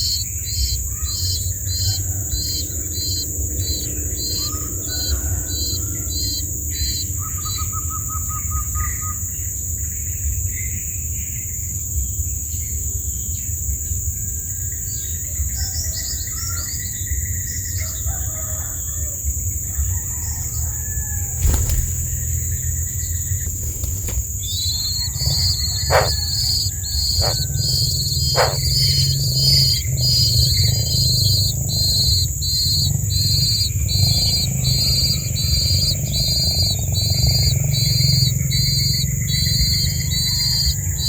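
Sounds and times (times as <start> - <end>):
birds chirping: 0.0 - 9.5, 14.6 - 41.0
downward-sliding bird calls: 21.1 - 40.7
low rumble: 21.2 - 31.7.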